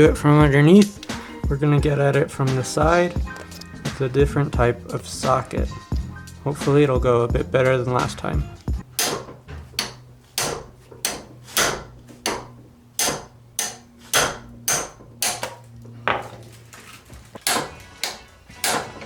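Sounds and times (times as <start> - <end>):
hammer blows on metal: 8.9 - 15.6, 17.4 - 19.0.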